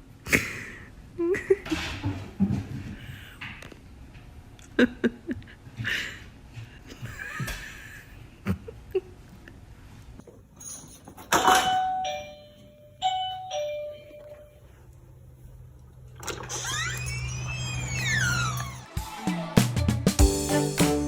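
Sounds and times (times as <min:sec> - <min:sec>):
doorbell chime ding-dong: 0:11.7 - 0:14.6.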